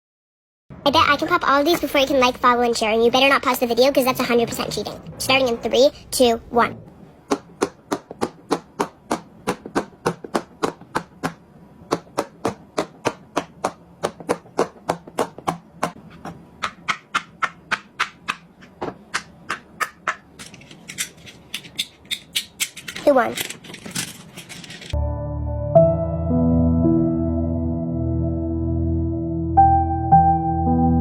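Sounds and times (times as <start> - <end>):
pop-it toy bubbles popping: 7.2 - 20.3.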